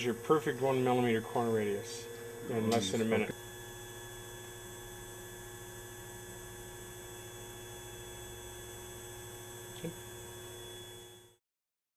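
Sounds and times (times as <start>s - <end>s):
electrical hum: 0.0s - 11.4s.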